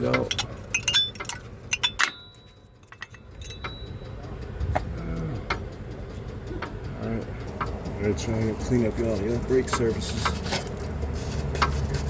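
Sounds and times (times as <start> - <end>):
metallic clicks of brake pads: 0.0 - 12.0
low rumble: 0.3 - 9.6.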